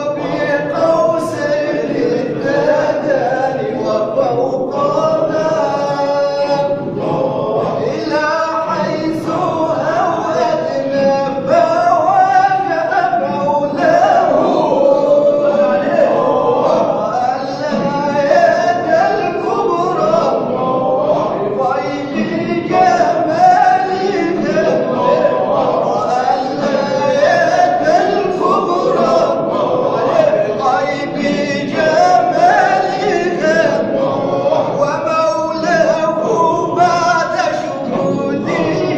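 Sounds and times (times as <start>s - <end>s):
men chanting devotional song: 0.0s - 38.9s.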